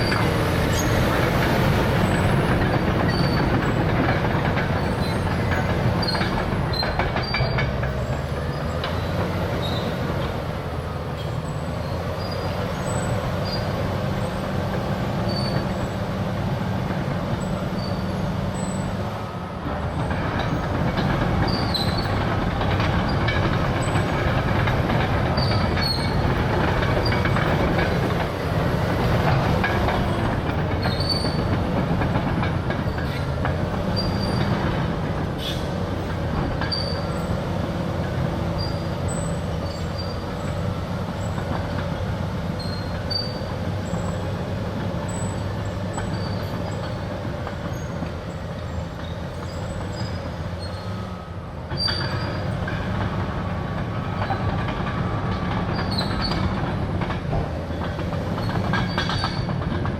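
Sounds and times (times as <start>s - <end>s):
bulldozer diesel engine under load: 0.0s - 59.9s
steel tracks clanking: 0.0s - 59.9s
short high squeaks: 42.6s - 44.0s, 49.0s - 52.6s.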